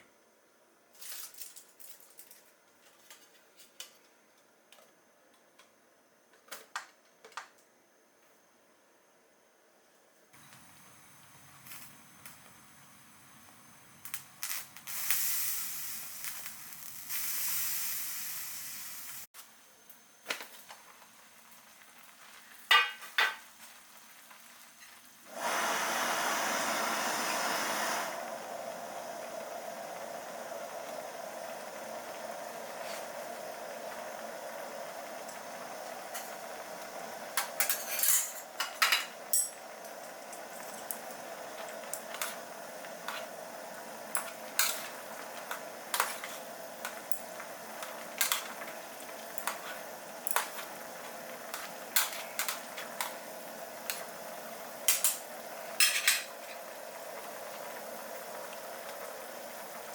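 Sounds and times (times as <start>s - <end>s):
food sizzling in a metal tin: 14.1s - 19.3s, 20.3s - 59.9s.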